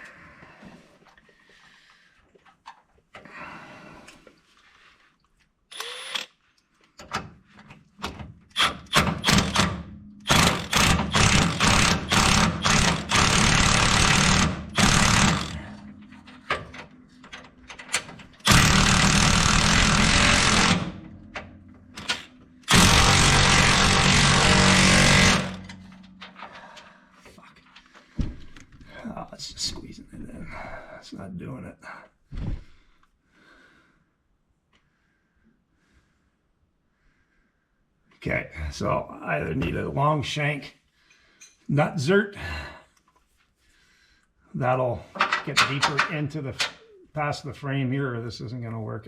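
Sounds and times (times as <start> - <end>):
power tool running in bursts: 10.3 - 15.6, 18.4 - 21.0, 22.7 - 25.8.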